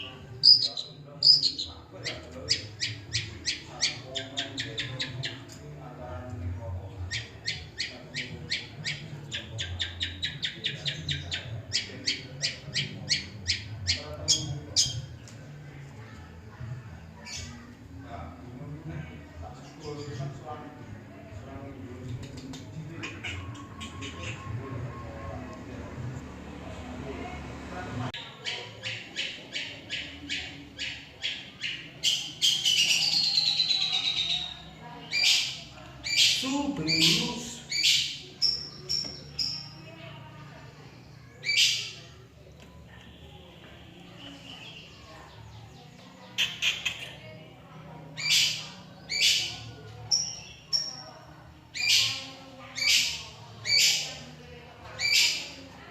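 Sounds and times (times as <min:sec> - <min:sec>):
bird chattering calls: 0:00.0 - 0:05.5, 0:07.1 - 0:15.1, 0:23.0 - 0:24.6, 0:28.2 - 0:39.8, 0:46.2 - 0:47.2.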